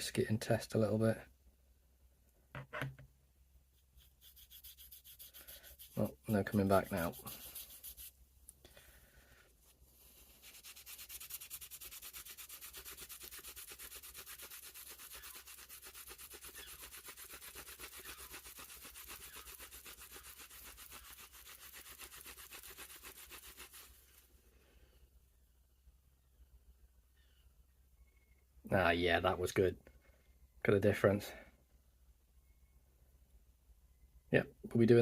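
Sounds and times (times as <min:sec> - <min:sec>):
rubbing knife handle with polish: 0:03.8 - 0:08.2, 0:10.0 - 0:24.2.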